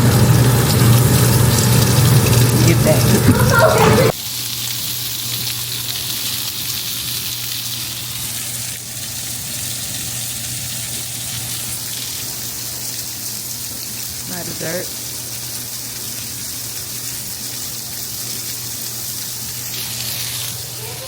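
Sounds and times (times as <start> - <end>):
sausage sizzling in a pan: 0.0 - 21.0.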